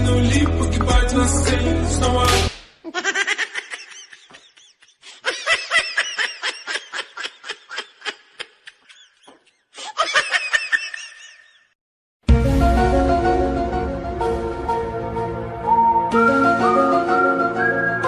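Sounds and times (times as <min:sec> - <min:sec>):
high-pitched giggling: 0:02.8 - 0:11.7.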